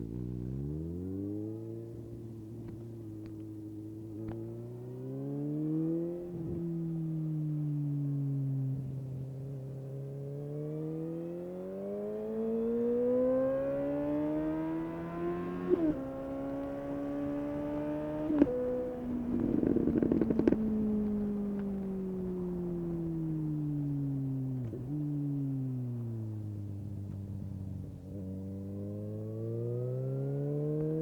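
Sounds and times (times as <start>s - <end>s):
motorcycle engine accelerating: 0.0s - 31.0s
exhaust crackles: 13.1s - 31.0s.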